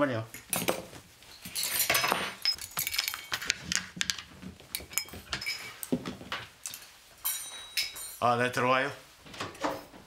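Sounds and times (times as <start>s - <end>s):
metal instruments clinking: 0.3s - 6.0s, 6.6s - 8.3s.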